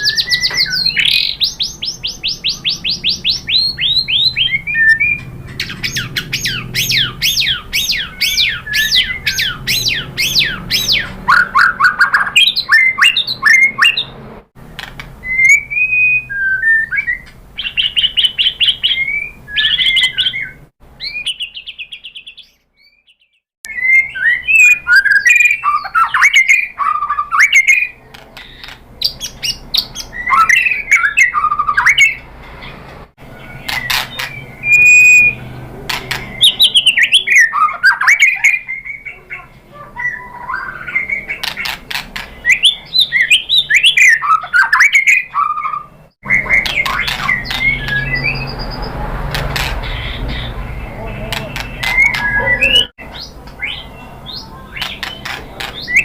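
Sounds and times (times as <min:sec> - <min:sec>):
bird singing whistled notes: 0:00.0 - 0:14.1, 0:15.2 - 0:32.2, 0:33.3 - 0:39.2, 0:40.0 - 0:41.7, 0:42.3 - 0:49.0, 0:49.8 - 0:55.2.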